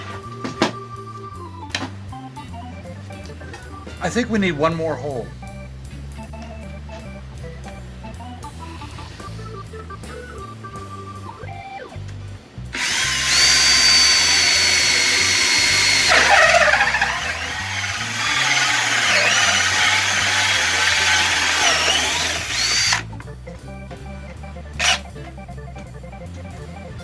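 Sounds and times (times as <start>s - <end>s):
electric drill whining: 12.7s - 23.1s, 24.8s - 25.1s.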